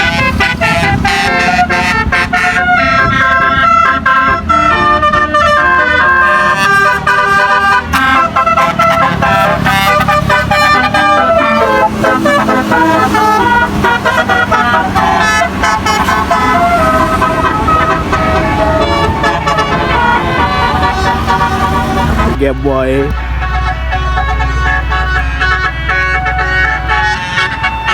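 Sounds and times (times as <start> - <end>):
bus horn playing a tune: 0.0 - 27.9
low engine hum: 0.0 - 27.9.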